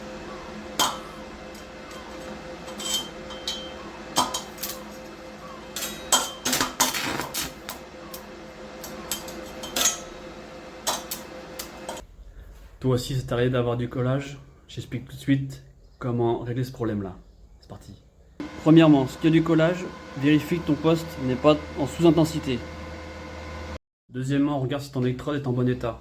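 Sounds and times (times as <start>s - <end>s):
metal rod clinking on steel: 2.7s - 4.9s
steady hum: 18.4s - 23.8s.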